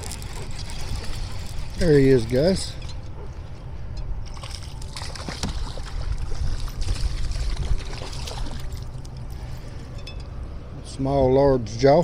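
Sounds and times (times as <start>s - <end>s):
water splashing and lapping: 0.0s - 10.0s
wind buffeting microphone: 5.2s - 9.2s.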